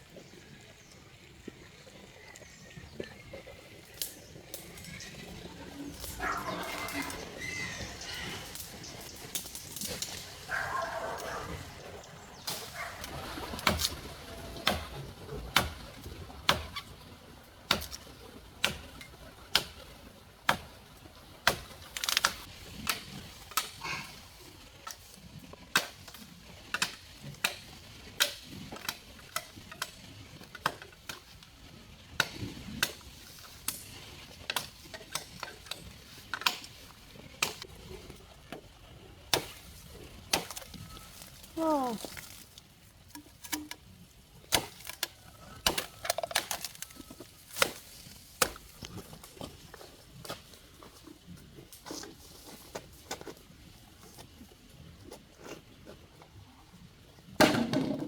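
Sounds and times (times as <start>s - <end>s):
blade chopping bamboo: 12.5s - 14.0s, 14.6s - 15.8s, 17.7s - 19.8s, 40.3s - 41.3s, 44.5s - 46.9s, 47.5s - 48.7s.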